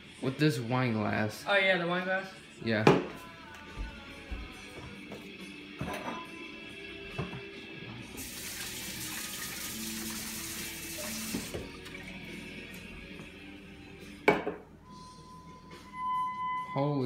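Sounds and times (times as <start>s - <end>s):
tap water running: 8.2s - 12.8s.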